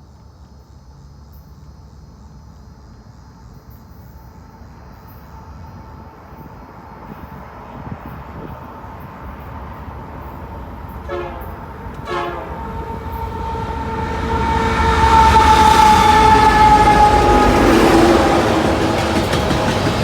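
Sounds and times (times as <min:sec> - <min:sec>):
train rumble: 0:00.0 - 0:20.0
locomotive air horn: 0:11.0 - 0:19.2.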